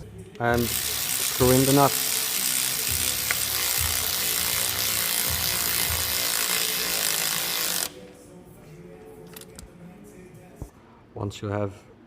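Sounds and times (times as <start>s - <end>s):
power tool spinning a nut: 0.5s - 7.9s.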